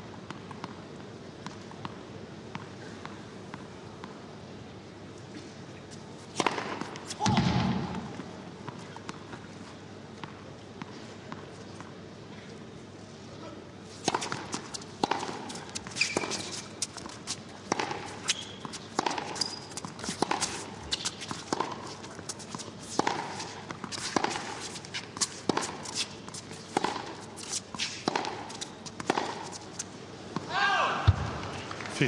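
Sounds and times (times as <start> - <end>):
tennis racket hitting ball: 6.4 - 8.3, 14.0 - 29.8
short high squeaks: 15.9 - 16.6, 18.2 - 19.8.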